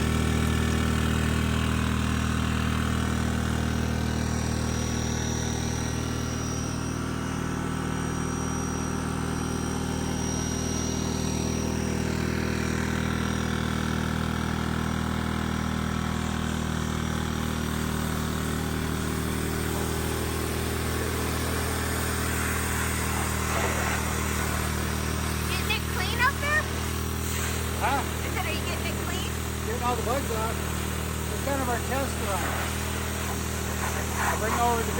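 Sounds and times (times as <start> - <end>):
small gasoline engine running: 0.0 - 34.9
water spray hissing: 21.0 - 34.9.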